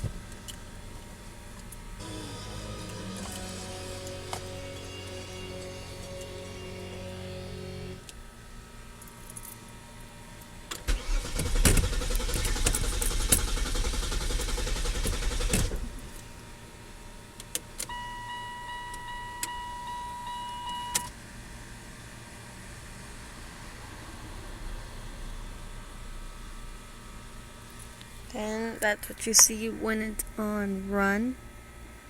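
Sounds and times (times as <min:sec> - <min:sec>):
steady electronic tone: 0:01.9 - 0:08.1
starter motor cranking engine: 0:02.0 - 0:08.0, 0:10.8 - 0:16.2.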